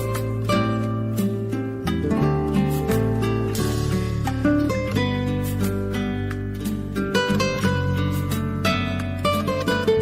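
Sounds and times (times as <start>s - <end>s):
plucked guitar melody: 0.0s - 10.0s
steady bass: 0.0s - 10.0s.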